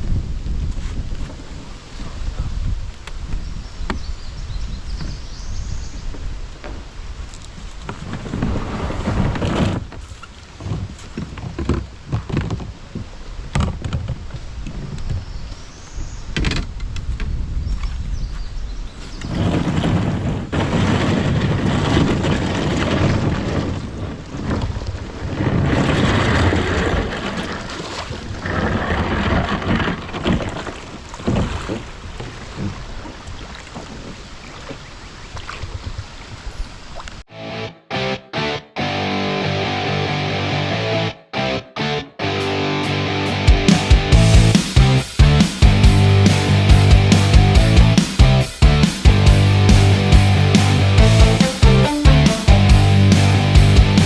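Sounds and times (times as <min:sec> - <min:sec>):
water splashing and rushing: 0:06.0 - 0:14.6, 0:19.4 - 0:37.3
paddle knocking against hull: 0:07.9 - 0:15.1, 0:25.4 - 0:34.9.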